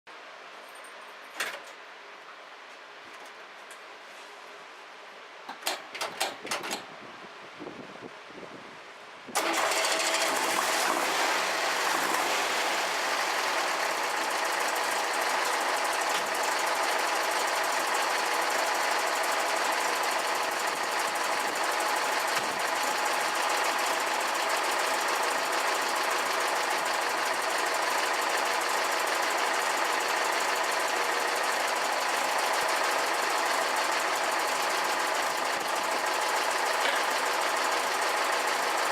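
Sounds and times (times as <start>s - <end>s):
engine idling with clatter: 9.4s - 38.9s.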